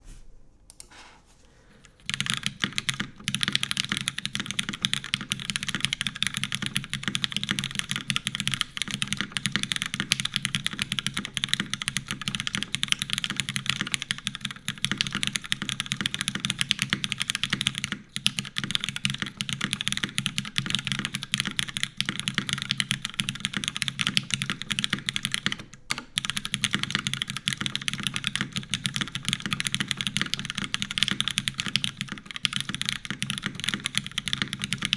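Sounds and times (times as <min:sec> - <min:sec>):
fast typing on mechanical keyboard: 0:01.7 - 0:34.9.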